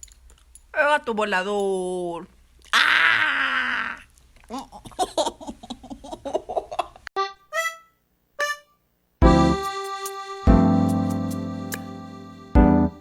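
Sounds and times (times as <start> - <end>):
piano music: 9.2 - 13.0.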